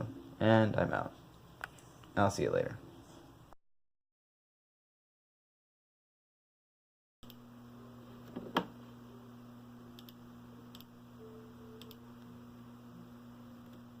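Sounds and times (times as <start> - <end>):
steady low hum: 7.2 - 14.0.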